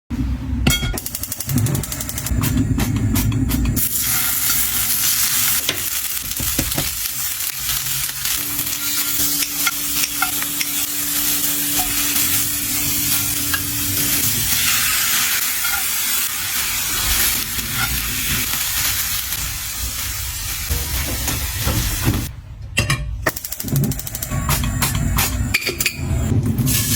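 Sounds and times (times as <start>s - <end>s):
food sizzling in a pan: 3.8s - 22.3s.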